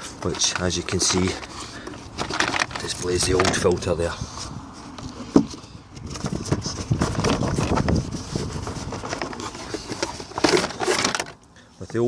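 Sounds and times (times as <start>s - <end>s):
plastic parts knocking: 0.0s - 3.8s, 5.3s - 11.4s
plastic rustling: 0.0s - 4.0s, 6.0s - 11.4s.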